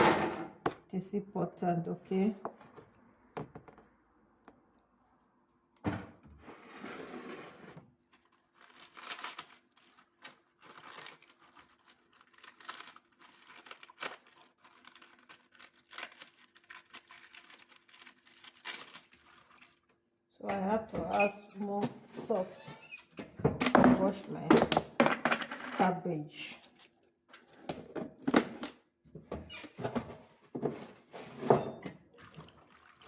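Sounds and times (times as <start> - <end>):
cabbage rustling and crinkling: 7.9 - 19.9.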